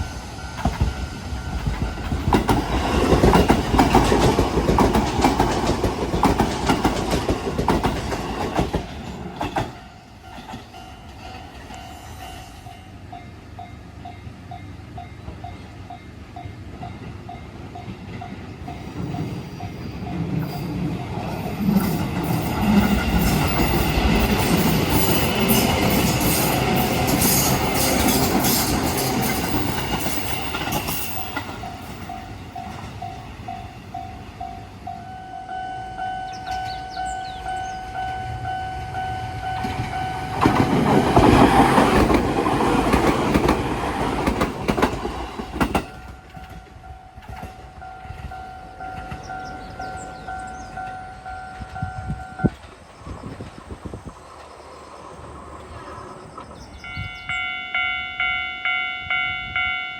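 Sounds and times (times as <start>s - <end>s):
train wheels clattering: 0.0s - 12.5s, 17.8s - 34.2s, 39.5s - 54.6s
crossing warning bell clanging: 0.0s - 52.8s, 56.7s - 59.9s
rush of train noise: 0.0s - 59.9s.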